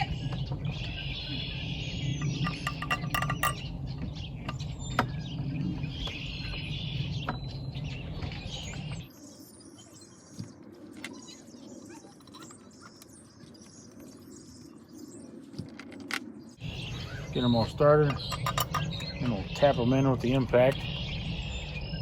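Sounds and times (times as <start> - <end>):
small birds chirping: 0.0 - 22.0
metal parts clinking: 2.2 - 3.6, 18.1 - 19.2.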